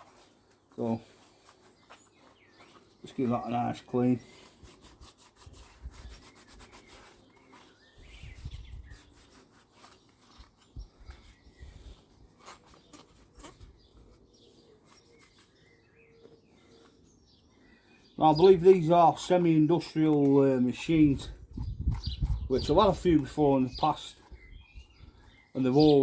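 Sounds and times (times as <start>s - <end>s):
cloth scrubbing: 0.0s - 8.0s.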